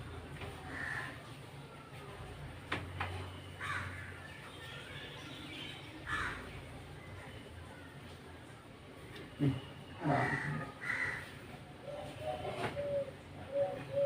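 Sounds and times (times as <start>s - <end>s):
crow cawing: 0.8s - 1.2s, 3.6s - 4.1s, 6.1s - 6.4s, 10.2s - 11.3s.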